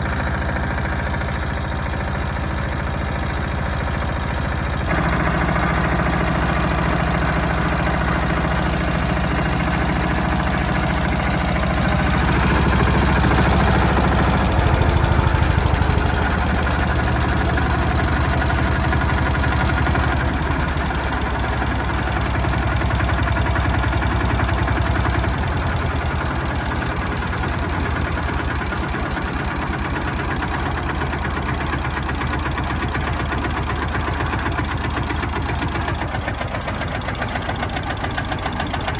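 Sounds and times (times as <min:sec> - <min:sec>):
diesel engine knocking steadily: 0:00.0 - 0:38.9.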